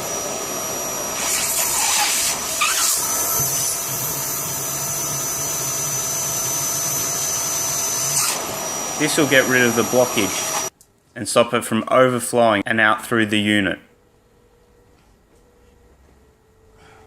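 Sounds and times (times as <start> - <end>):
vacuum cleaner whining: 0.0 - 10.7
low hum: 1.8 - 10.7.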